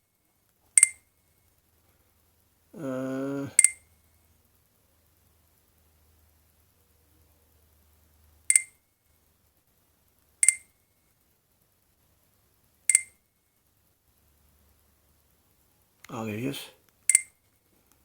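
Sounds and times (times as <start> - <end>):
phone keypad beeps: 10.4 - 10.6.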